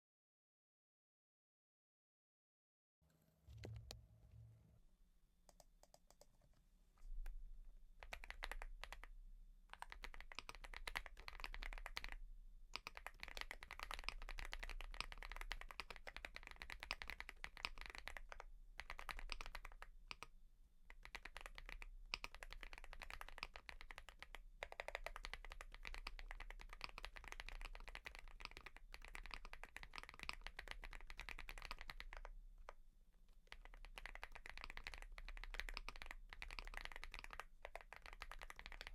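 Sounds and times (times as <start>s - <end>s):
mechanical keyboard typing: 8.0s - 9.1s, 9.7s - 12.2s, 12.8s - 20.3s, 21.0s - 32.3s, 33.4s - 38.9s.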